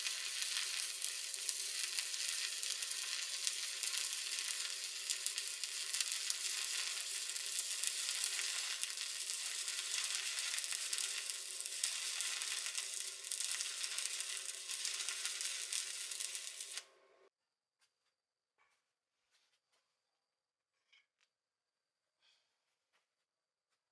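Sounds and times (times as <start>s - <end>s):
welding arc crackling: 0.0s - 17.0s.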